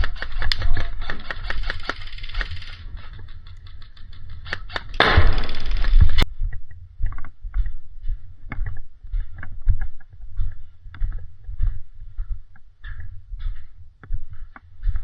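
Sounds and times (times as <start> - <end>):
airsoft gun firing: 4.8 - 6.2.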